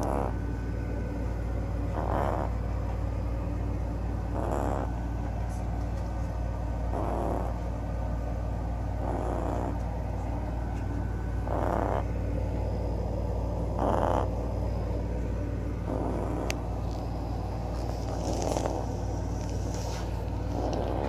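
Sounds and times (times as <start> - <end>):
small dog snoring: 0.0 - 0.6, 1.8 - 3.0, 4.2 - 5.6, 6.8 - 7.9, 8.9 - 10.4, 11.4 - 12.2, 12.8 - 14.9, 15.8 - 21.0
steady low hum: 0.0 - 21.0.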